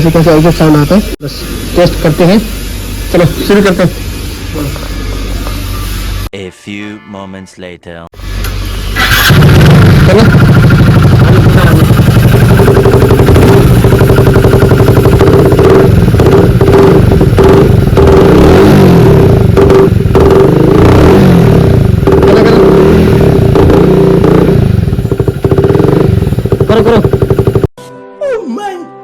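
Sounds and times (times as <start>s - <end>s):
motorcycle engine revving: 8.2s - 27.7s.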